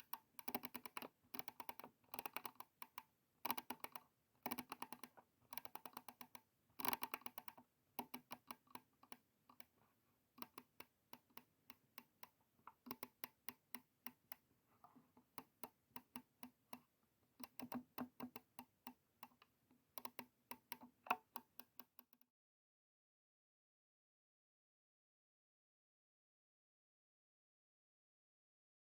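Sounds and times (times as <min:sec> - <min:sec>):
mouse buttons clicking: 0:00.0 - 0:09.7.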